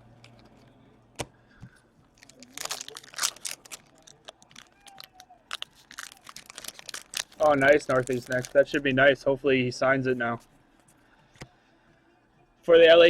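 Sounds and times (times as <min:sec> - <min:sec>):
card pack wrapper crinkling: 0:02.1 - 0:08.8.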